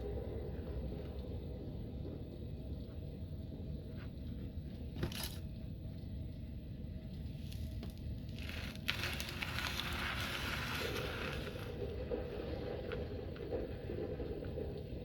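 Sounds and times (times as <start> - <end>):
low hum: 0.0 - 15.0
sand crackling and scraping: 7.5 - 13.3.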